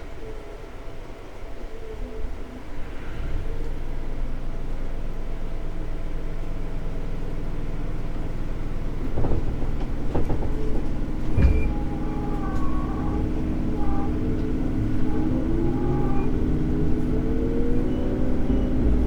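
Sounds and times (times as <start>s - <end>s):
train wheels rumbling on rail: 0.0s - 19.0s
thin wavering whining tones: 11.4s - 19.0s.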